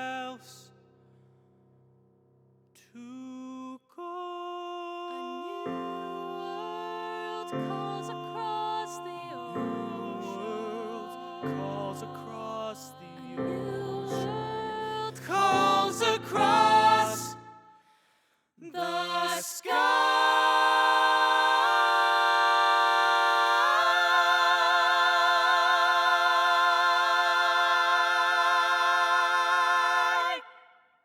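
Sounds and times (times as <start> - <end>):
unaccompanied voices singing: 5.0 - 17.6, 18.6 - 30.7.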